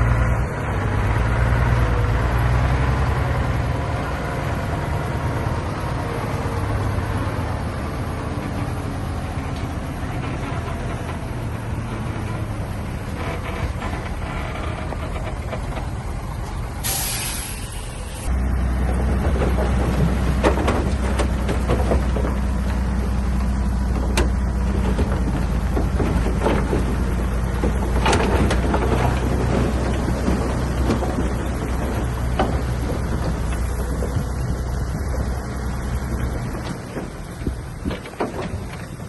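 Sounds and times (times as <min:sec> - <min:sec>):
heavy diesel engine running: 0:00.0 - 0:39.0
knocks and clatter: 0:09.4 - 0:16.7, 0:18.8 - 0:39.0
hiss of air: 0:16.8 - 0:18.3.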